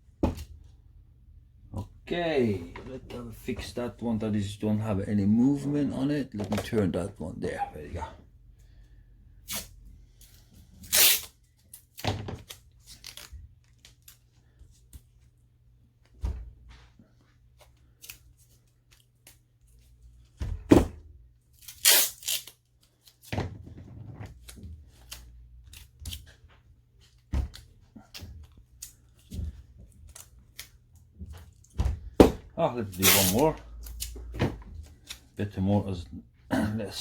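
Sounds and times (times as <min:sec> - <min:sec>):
adhesive tape tearing: 0:10.8 - 0:13.3, 0:21.6 - 0:22.6, 0:32.8 - 0:34.2.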